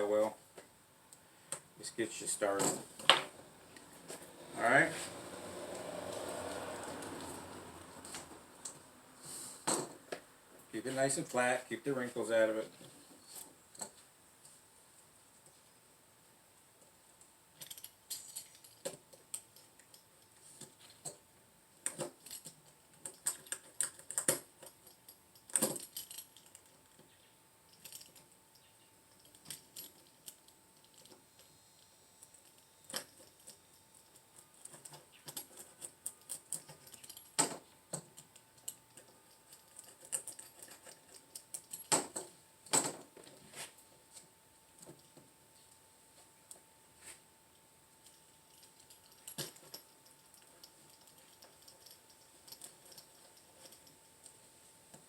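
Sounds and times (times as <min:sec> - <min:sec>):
light clicks and taps of tools: 0:16.8 - 0:21.2.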